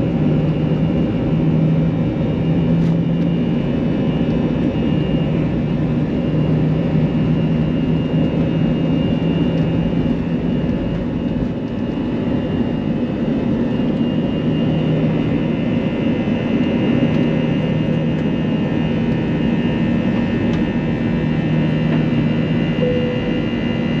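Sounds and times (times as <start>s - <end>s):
jet engines roaring in cabin: 0.0s - 24.0s
faint high whine: 22.0s - 24.0s.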